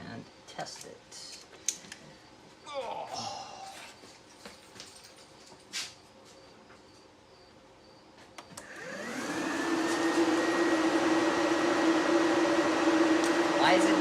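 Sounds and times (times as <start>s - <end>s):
radiator fans whining and humming: 8.2s - 14.0s.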